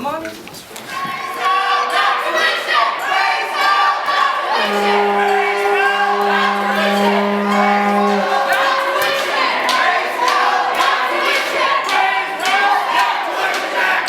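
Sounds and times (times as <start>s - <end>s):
crowd singing and shouting: 1.0s - 14.0s
steady held tone: 4.5s - 8.9s
rhythmic sharp hits: 4.6s - 10.8s.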